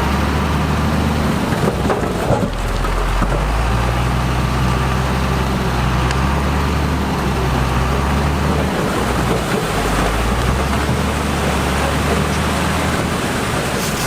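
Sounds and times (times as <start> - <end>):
diesel engine running: 0.0 - 14.0
grinding rattling noise: 13.7 - 14.0.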